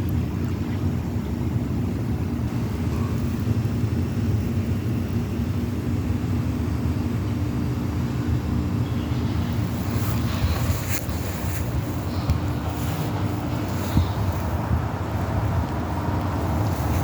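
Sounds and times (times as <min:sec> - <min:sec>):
diesel engine running: 0:00.0 - 0:17.0.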